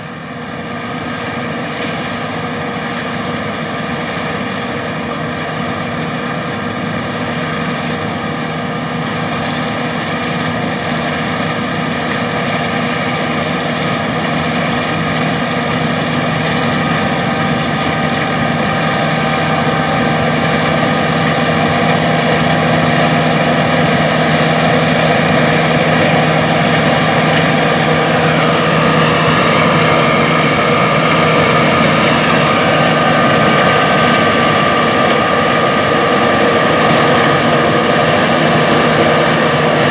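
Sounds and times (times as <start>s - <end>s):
combine harvester drone: 0.0s - 39.9s
high whining tones: 13.6s - 39.9s.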